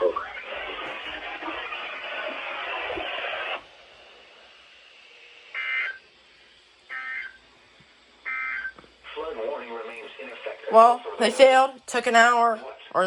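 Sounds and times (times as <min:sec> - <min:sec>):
radio hiss: 0:00.0 - 0:13.0
data tone bursts: 0:05.5 - 0:06.1, 0:06.9 - 0:07.4, 0:08.2 - 0:08.8.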